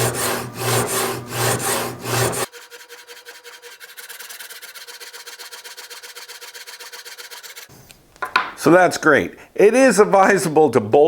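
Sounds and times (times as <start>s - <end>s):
sanding machine rasping strokes: 0.0s - 7.7s.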